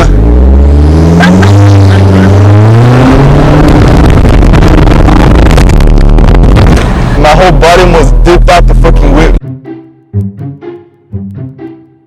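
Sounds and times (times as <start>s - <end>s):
car engine accelerating: 0.0s - 9.4s
loud rushing noise: 2.4s - 9.0s.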